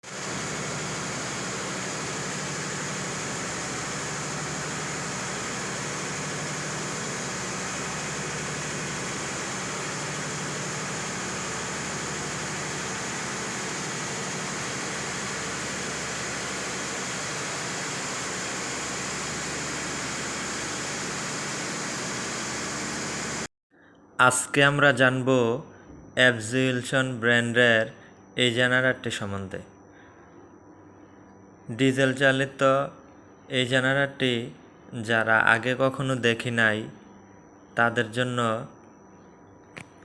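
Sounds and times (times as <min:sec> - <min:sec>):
diesel generator running: 0:00.0 - 0:23.5
low hum: 0:00.1 - 0:23.5.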